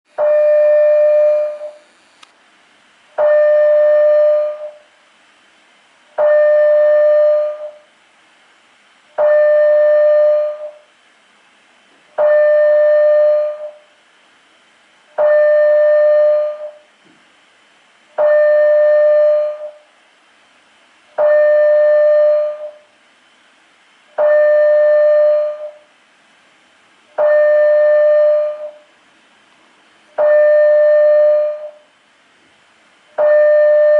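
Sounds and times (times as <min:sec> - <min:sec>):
fire alarm steady tones: 0:00.2 - 0:01.8, 0:03.2 - 0:04.9, 0:06.2 - 0:07.9, 0:09.2 - 0:10.9, 0:12.2 - 0:13.9, 0:15.2 - 0:16.9, 0:18.2 - 0:19.9, 0:21.2 - 0:22.9, 0:24.2 - 0:25.9, 0:27.2 - 0:28.9, 0:30.2 - 0:31.9, 0:33.1 - 0:33.9.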